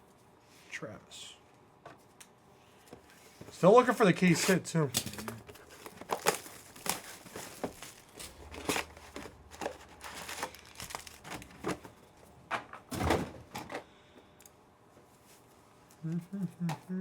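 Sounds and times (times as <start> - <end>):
cards rustling and scraping: 3.2 - 12.0
wrappers crinkling and tearing: 3.8 - 11.6.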